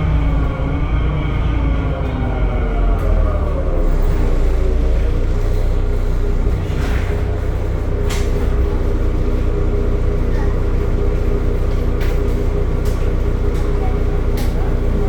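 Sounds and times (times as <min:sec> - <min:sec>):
bus diesel engine drone: 0:00.0 - 0:15.0
bus body rattles: 0:03.5 - 0:15.0.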